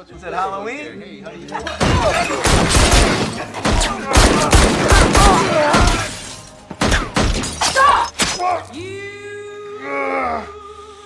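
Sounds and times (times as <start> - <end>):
people shouting: 1.6 - 6.2, 7.0 - 8.7
loud bangs like gunfire: 1.8 - 7.6.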